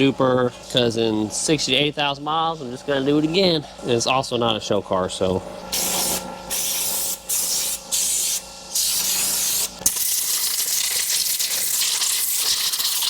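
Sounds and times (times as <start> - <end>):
compressed air spray hissing: 5.7 - 13.0.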